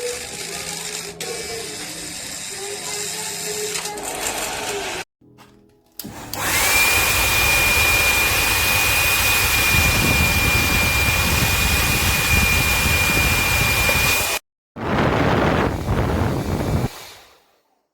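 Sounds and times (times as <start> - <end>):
hair dryer running: 6.0 - 14.4.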